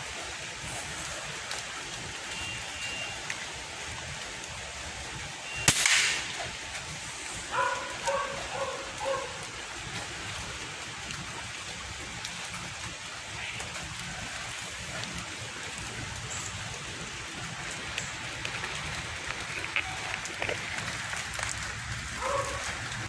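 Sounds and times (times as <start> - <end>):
steady hiss: 0.0 - 23.0
air rifle shot: 5.7 - 6.3.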